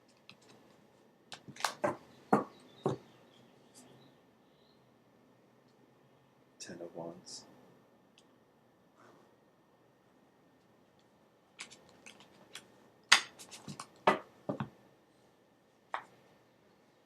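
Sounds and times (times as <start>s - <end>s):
cards clicking and tapping: 1.3s - 3.0s, 11.6s - 14.7s
paper rustling: 11.6s - 14.0s.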